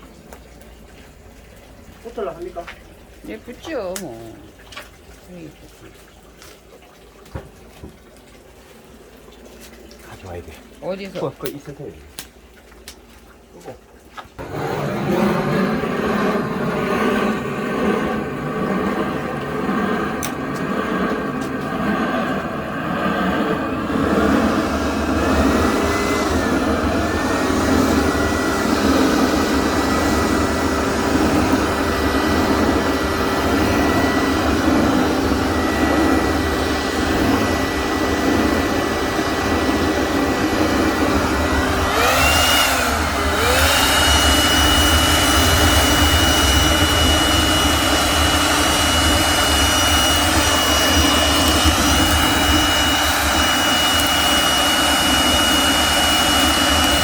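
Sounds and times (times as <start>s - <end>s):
electric air blower whine: 14.4s - 57.0s.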